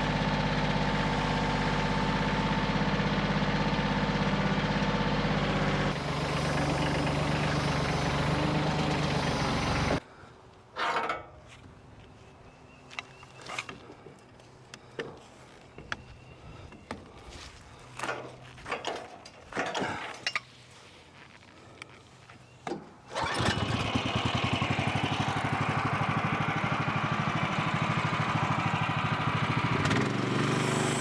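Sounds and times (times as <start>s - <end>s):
engine running: 0.0s - 10.0s, 23.1s - 31.0s.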